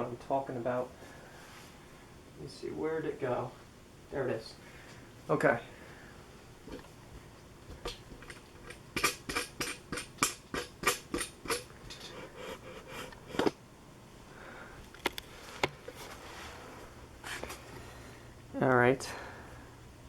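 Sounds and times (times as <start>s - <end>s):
handling clicks and knocks: 6.7s - 12.2s, 13.1s - 13.6s, 14.8s - 16.0s.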